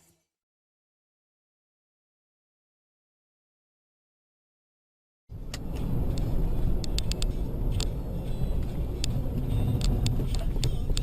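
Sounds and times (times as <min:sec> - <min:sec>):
car rumble: 0:05.3 - 0:11.0.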